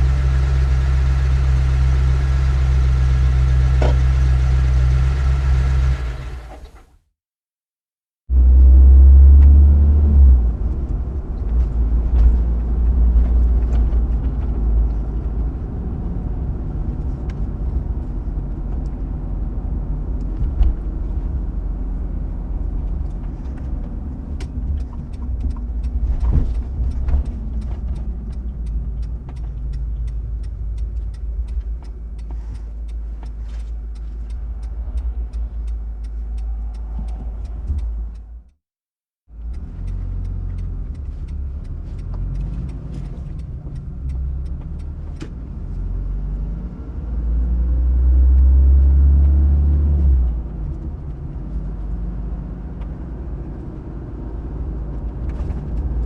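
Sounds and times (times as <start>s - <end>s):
car engine and road rumble: 0.0s - 7.0s, 8.3s - 38.6s, 39.2s - 56.0s
faint ticks: 24.4s - 38.6s, 39.4s - 45.3s.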